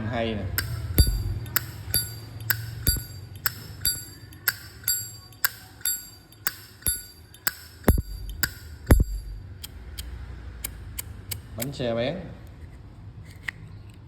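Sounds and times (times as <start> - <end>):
heavy low thumps: 0.6 - 2.1, 7.9 - 9.4.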